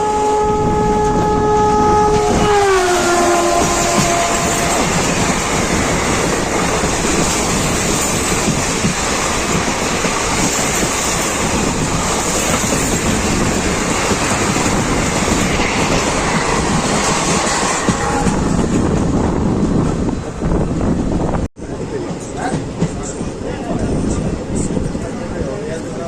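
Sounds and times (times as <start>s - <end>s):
train horn: 0.0s - 5.7s, 17.4s - 18.9s
train rumbling on rails: 0.0s - 26.0s.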